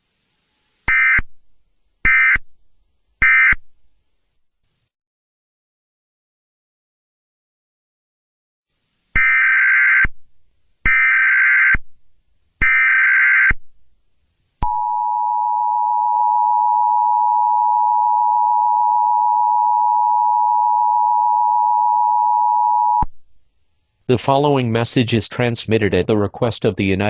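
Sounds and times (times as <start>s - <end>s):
steady two-tone attention signal: 14.6s - 23.0s.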